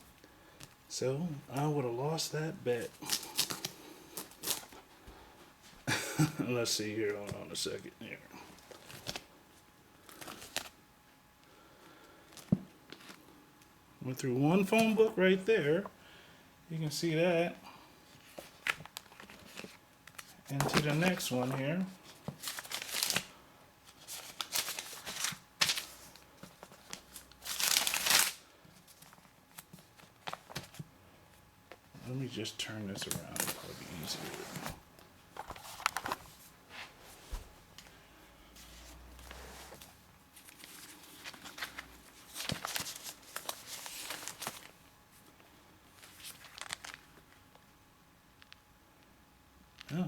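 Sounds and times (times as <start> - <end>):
pages flipping and rustling: 2.9 - 4.8, 8.6 - 9.3, 10.0 - 10.8, 12.3 - 13.3, 18.2 - 30.9, 33.0 - 38.0, 38.6 - 44.8, 45.9 - 47.2.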